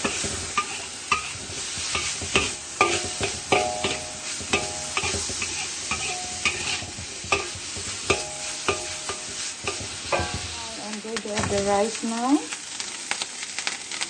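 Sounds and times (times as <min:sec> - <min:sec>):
utensil scraping a pan: 0:00.0 - 0:10.6
oil sizzling in a pan: 0:00.0 - 0:14.0.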